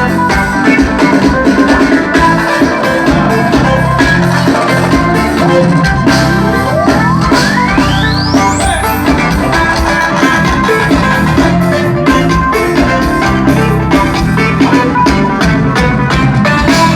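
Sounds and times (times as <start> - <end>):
band music with steady beat: 0.0 - 16.9
tone sweeping upward in pitch: 2.1 - 15.0.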